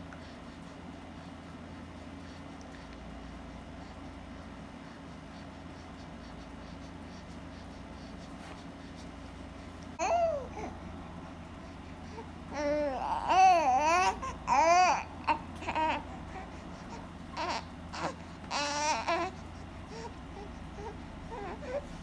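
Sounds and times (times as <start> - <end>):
infant cooing and babbling: 10.0 - 10.9, 12.0 - 22.0.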